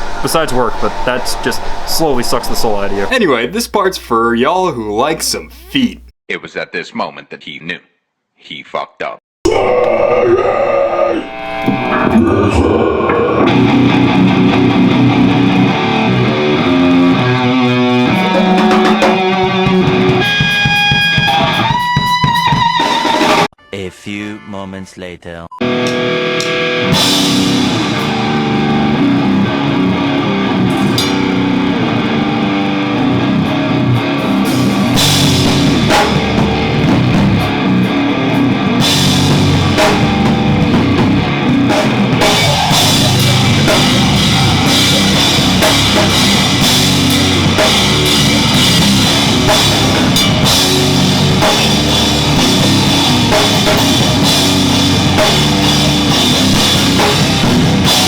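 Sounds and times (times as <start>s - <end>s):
heavy rock music: 9.5s - 23.5s, 25.6s - 58.0s
crashing cymbals: 30.7s - 31.9s.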